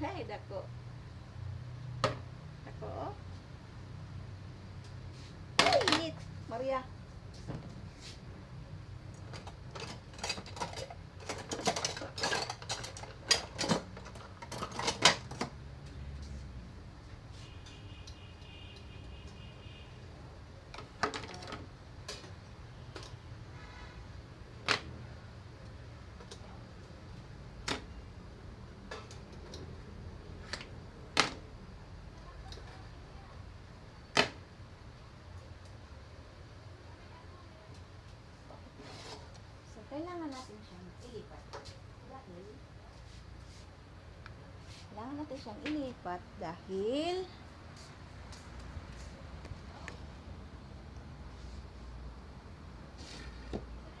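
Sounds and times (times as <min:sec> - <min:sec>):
kitchenware clinking and clattering: 0:09.3 - 0:15.6.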